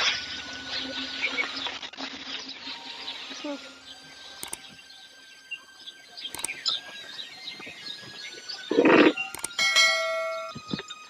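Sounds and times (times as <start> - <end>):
small birds chirping: 0.0 - 11.0
brief high tonal sound: 8.7 - 10.6.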